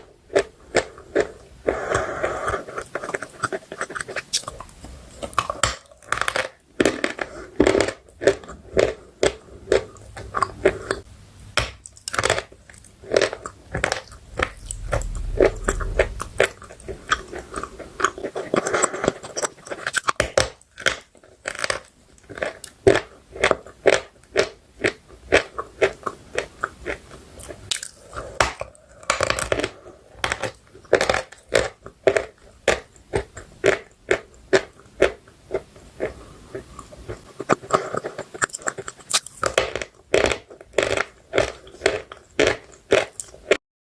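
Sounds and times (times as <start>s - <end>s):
soft chewing: 0.3s - 11.1s, 20.8s - 43.6s.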